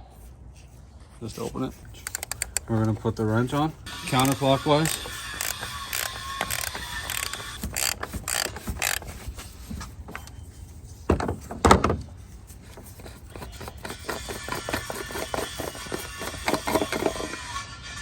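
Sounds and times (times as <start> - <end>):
ratchet clicking: 2.0 - 3.0, 4.0 - 9.4, 13.7 - 17.4.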